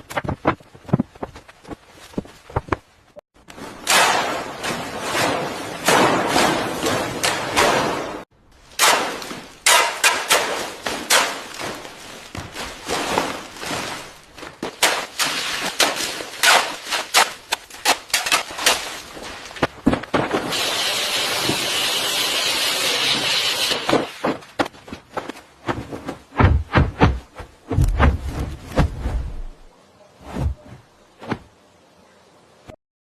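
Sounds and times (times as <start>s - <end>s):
building-work knocks and clatters: 0.0s - 2.9s, 3.5s - 8.2s, 8.8s - 20.6s.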